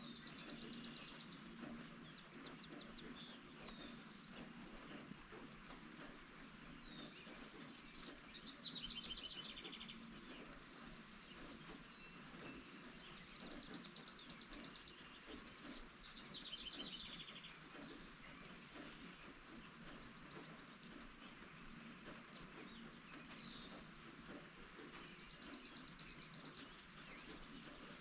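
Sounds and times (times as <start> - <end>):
light rain: 0.0 - 28.0.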